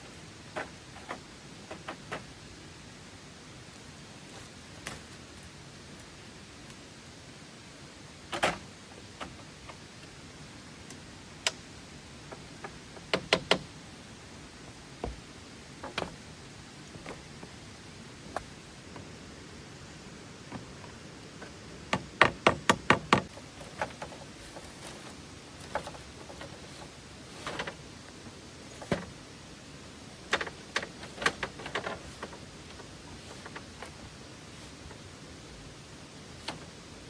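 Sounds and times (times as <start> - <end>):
faint hiss: 0.0 - 37.0
wooden knocks and taps: 15.0 - 16.2.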